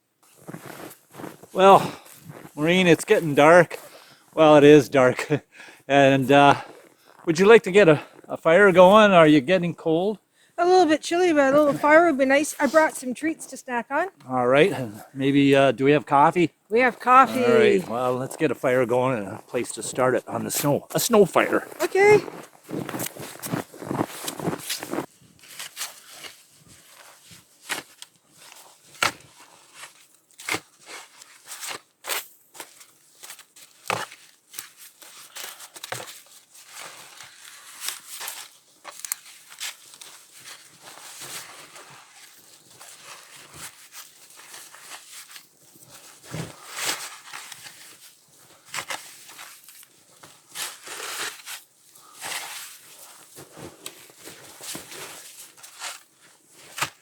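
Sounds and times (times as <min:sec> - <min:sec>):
crunching in snow: 0:00.3 - 0:02.6, 0:17.5 - 0:25.1.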